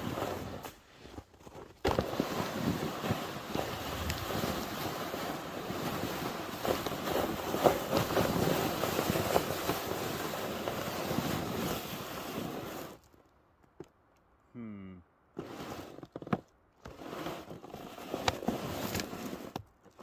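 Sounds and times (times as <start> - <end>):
crunches of snow: 0.0 - 13.4.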